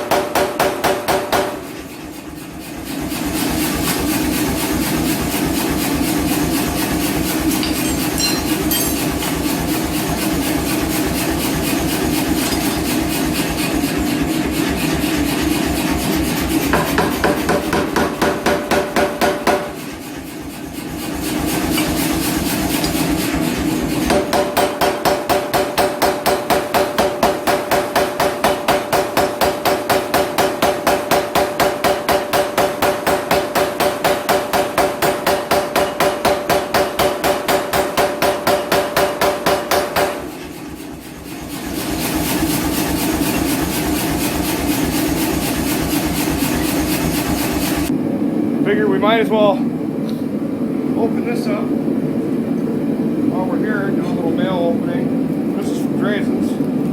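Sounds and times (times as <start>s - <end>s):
power hammer striking steel: 0.0s - 1.9s, 6.7s - 13.6s, 16.6s - 19.9s, 24.0s - 47.9s
steel ringing: 7.6s - 9.4s.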